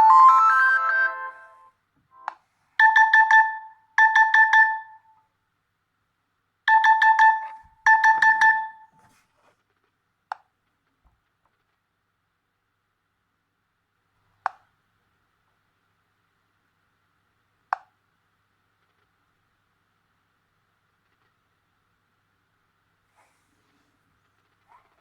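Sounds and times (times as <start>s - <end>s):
melodic phone ringtone: 0.0s - 5.1s, 6.7s - 8.9s.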